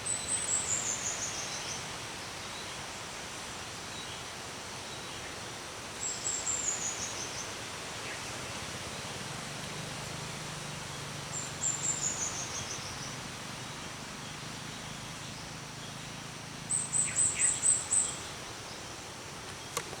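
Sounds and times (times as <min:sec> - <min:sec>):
outdoor background hiss: 0:00.0 - 0:20.0
songbird singing high phrases: 0:10.8 - 0:18.4.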